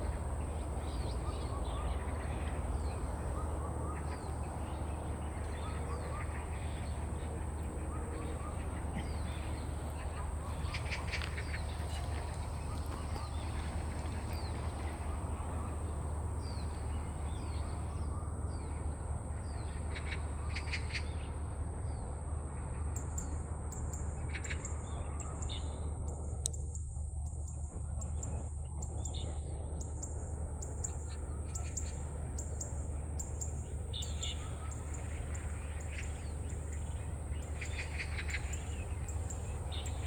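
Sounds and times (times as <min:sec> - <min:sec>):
birds chirping: 0:00.0 - 0:21.2, 0:30.7 - 0:40.0.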